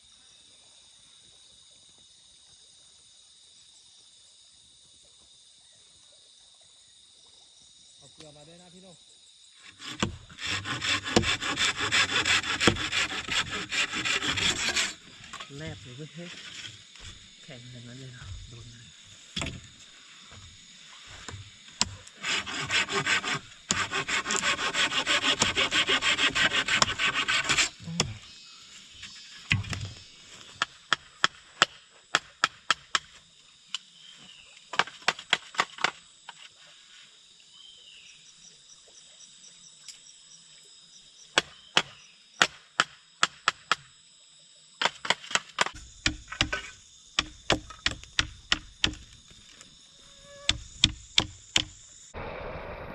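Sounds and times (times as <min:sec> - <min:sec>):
blade sawing bamboo: 0:09.6 - 0:17.3, 0:21.1 - 0:28.2, 0:44.8 - 0:51.7
blade chopping bamboo: 0:09.8 - 0:15.4, 0:21.2 - 0:28.2, 0:30.5 - 0:33.2, 0:34.7 - 0:36.0, 0:41.4 - 0:43.8, 0:44.8 - 0:49.3, 0:50.4 - 0:51.8.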